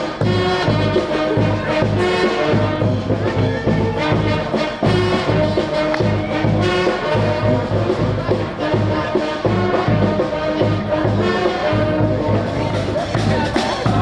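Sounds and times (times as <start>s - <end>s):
brass street band playing: 0.0s - 14.0s.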